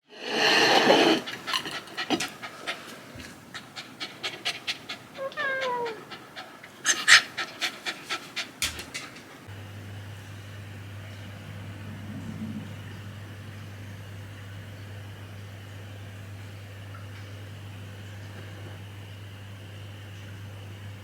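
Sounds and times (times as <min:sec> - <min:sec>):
dog panting: 0:00.9 - 0:09.5
dog whining: 0:04.7 - 0:07.5.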